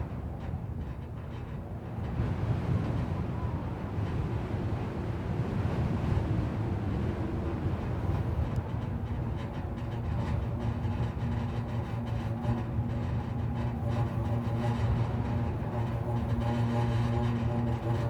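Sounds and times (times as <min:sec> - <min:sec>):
power lines humming drone: 0:08.1 - 0:18.0.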